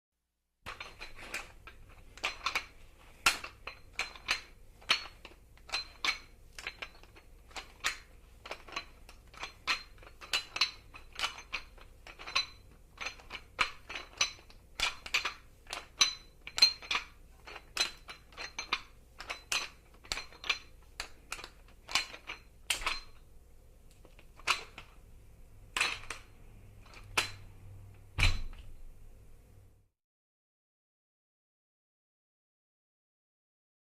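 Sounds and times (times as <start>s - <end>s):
weight plates and barbell clanking: 0.7s - 23.2s
weight set down with thud: 28.2s - 28.7s.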